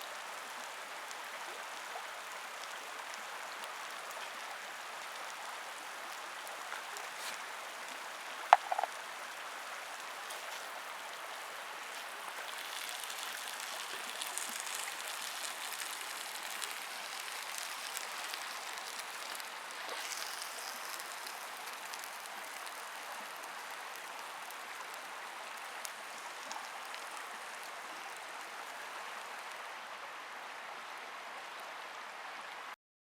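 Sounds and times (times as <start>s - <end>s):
food sizzling in a pan: 0.0s - 27.8s.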